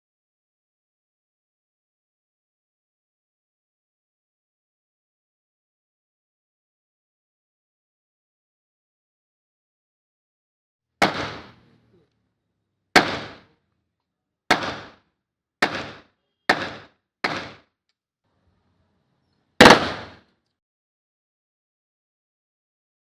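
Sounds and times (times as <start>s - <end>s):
rifle gunshots with echo: 11.0s - 11.6s, 13.0s - 13.5s, 14.5s - 15.0s, 15.6s - 17.6s, 19.6s - 20.2s.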